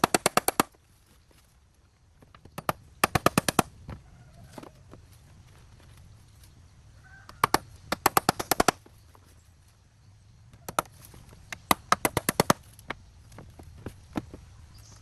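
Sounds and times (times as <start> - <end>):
sharp knocks: 7.3 - 8.8, 10.6 - 13.0.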